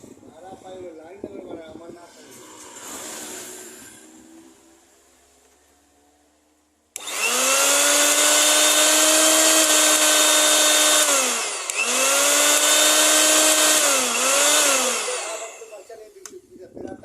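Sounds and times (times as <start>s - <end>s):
mixer grinder motor whining: 6.9s - 15.9s.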